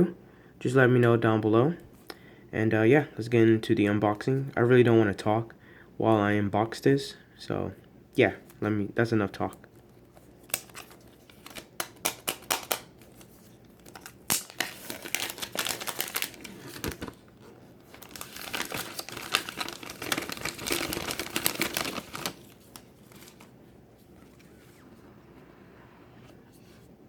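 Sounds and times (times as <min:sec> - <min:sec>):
plastic wrapping crinkling: 0:10.1 - 0:24.4.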